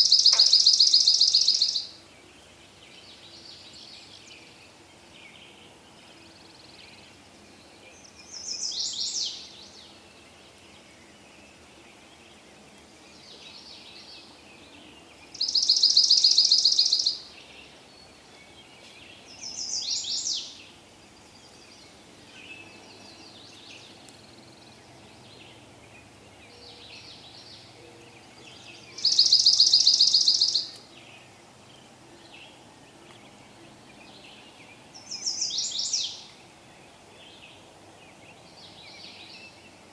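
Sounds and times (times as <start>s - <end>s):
birds calling: 0.0s - 1.8s.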